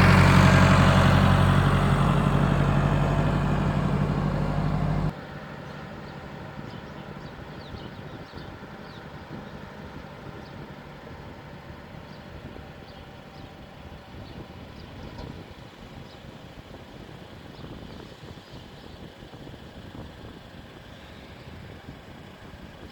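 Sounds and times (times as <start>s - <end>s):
machinery engine running: 0.0s - 5.1s.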